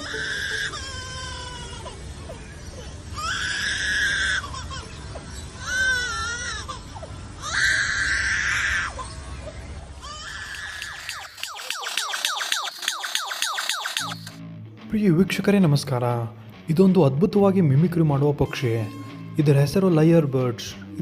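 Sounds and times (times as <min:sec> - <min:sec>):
bird mimicking crying baby: 0:00.0 - 0:14.4.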